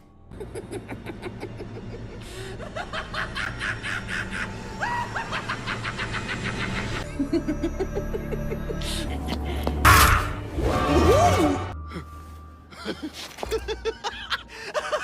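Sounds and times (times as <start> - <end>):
manic snickering laugh: 0.4 - 8.7.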